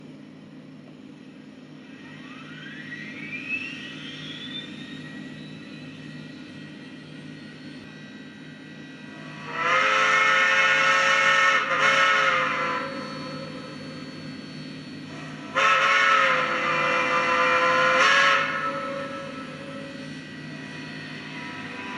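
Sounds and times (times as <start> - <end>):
low hum with rising whine: 0.0 - 21.9
multi-tone steam whistle: 1.9 - 7.8, 9.0 - 21.9.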